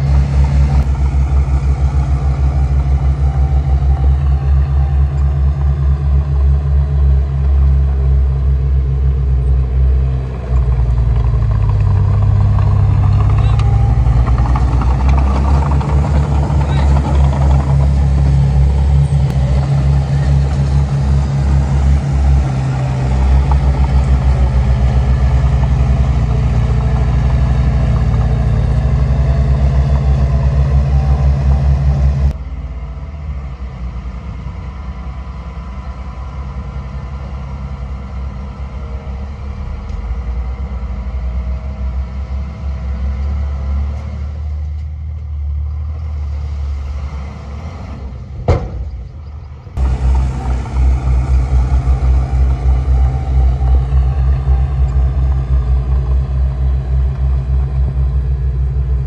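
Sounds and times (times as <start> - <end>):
heavy diesel engine running: 0.0 - 59.0
quieter duller engine: 0.0 - 59.0
sharp knock: 48.5 - 48.9.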